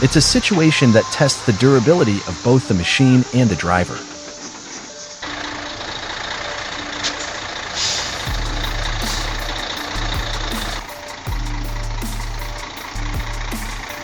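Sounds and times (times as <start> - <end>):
truck diesel engine working hard: 0.0 - 2.5, 4.0 - 14.0
background music with steady beat: 4.1 - 14.0.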